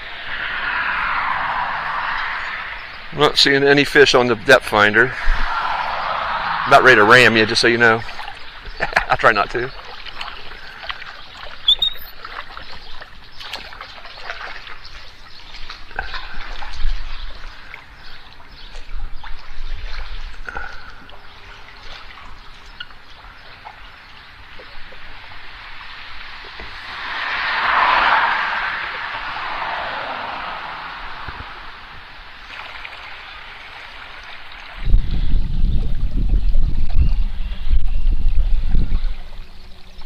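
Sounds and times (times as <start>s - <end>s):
rush of water: 0.0s - 40.0s
water trickling and splashing: 0.0s - 40.0s
water drips: 5.3s - 28.4s, 29.0s - 34.9s.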